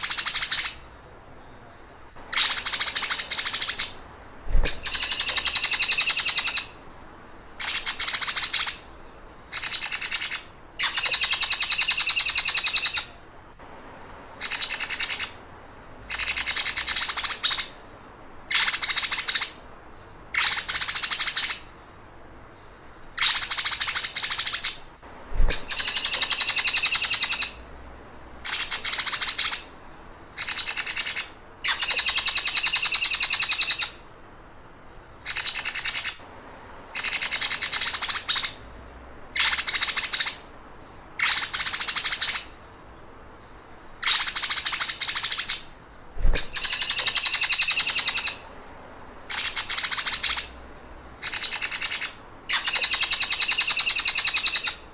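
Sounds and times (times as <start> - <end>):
songbird fast high trills: 23.2 - 29.8, 44.0 - 48.6.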